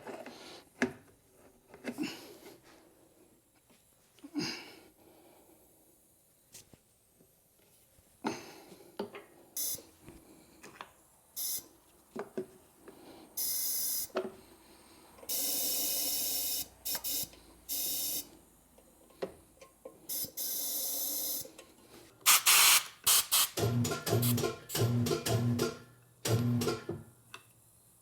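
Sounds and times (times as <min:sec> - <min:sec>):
compressed air hissing: 0:22.3 - 0:23.6.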